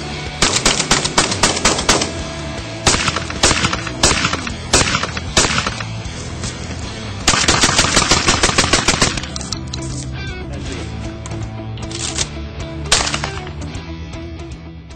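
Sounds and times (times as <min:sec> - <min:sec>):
background music: 0:00.0 - 0:14.9
shotgun firing: 0:00.4 - 0:06.1, 0:07.2 - 0:09.5, 0:12.9 - 0:13.6.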